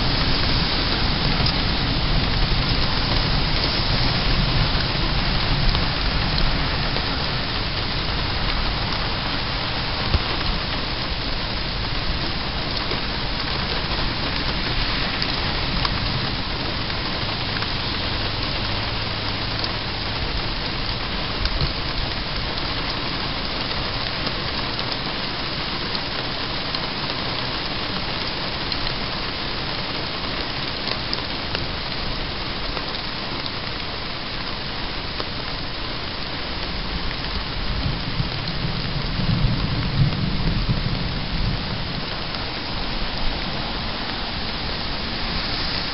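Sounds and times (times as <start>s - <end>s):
thunder rumble: 0.0s - 24.9s, 36.6s - 45.9s
steady rain falling: 0.0s - 45.9s.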